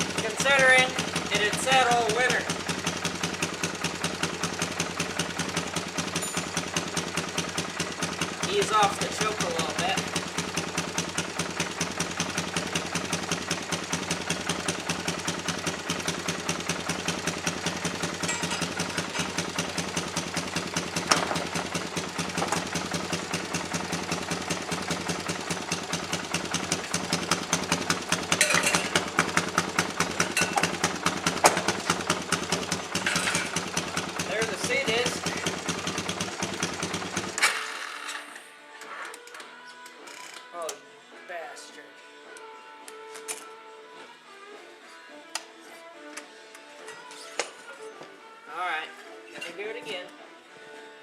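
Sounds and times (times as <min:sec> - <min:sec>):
engine idling: 0:00.0 - 0:38.0.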